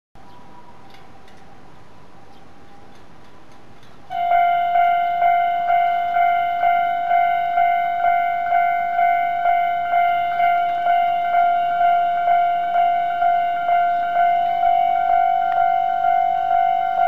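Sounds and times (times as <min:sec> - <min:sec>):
electronic level crossing bell ringing: 0:04.1 - 0:17.0.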